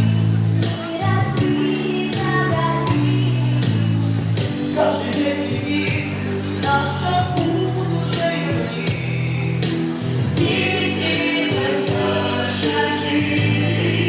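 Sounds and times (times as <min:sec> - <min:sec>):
instrumental accompaniment: 0:00.0 - 0:14.0
vocal ensemble singing pop song: 0:00.0 - 0:14.0
steady drum beat: 0:04.0 - 0:14.0.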